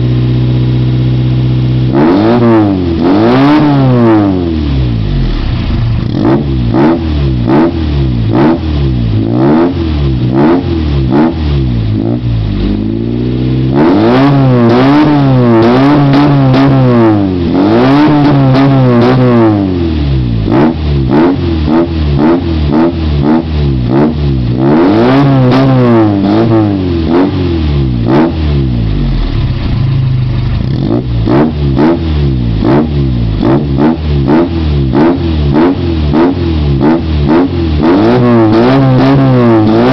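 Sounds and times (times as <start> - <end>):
car engine revving: 0.0 - 39.9.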